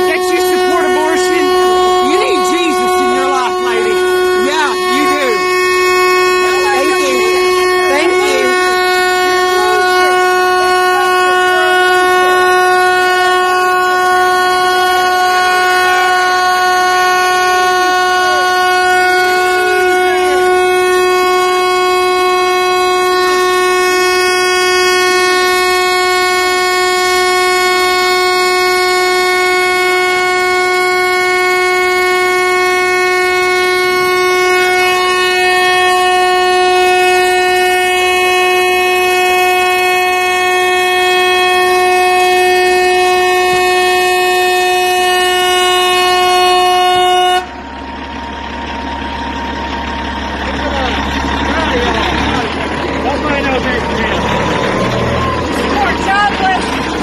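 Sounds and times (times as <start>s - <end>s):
faint voices: 0.0s - 21.6s, 50.3s - 57.0s
truck horn blaring: 0.0s - 57.0s.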